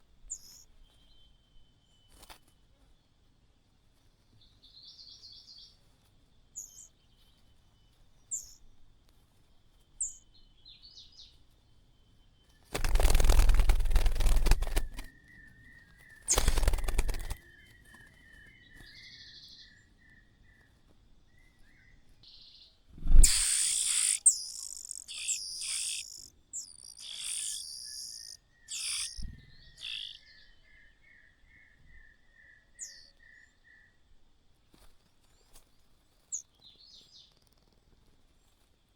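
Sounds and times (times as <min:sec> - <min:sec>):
nestlings chirping: 0:00.3 - 0:00.7, 0:12.7 - 0:15.1, 0:16.1 - 0:17.4, 0:23.1 - 0:30.4
rustling at a nest: 0:12.6 - 0:15.1, 0:16.1 - 0:18.0, 0:23.0 - 0:29.2, 0:29.8 - 0:30.2
bird trill: 0:12.8 - 0:15.3, 0:16.1 - 0:17.4, 0:23.1 - 0:33.6.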